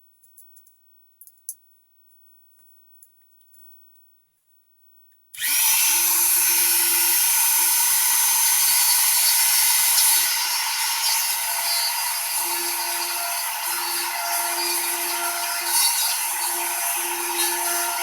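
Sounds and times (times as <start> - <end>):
power tool high whine: 5.4 - 18.0.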